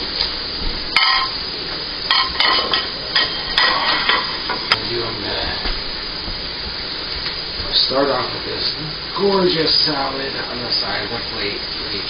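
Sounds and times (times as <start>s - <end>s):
grill sizzling: 0.0s - 12.0s
plates and utensils clinking: 1.0s - 1.4s, 2.1s - 4.8s.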